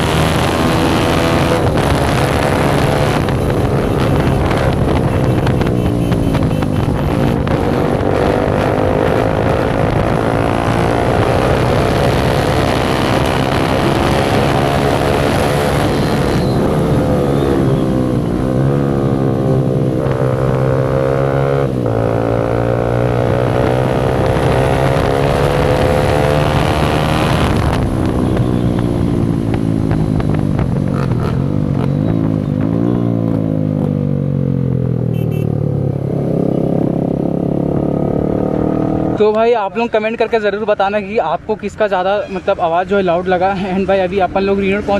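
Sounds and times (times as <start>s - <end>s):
unsilenced motorcycle engine accelerating: 0.0s - 39.3s.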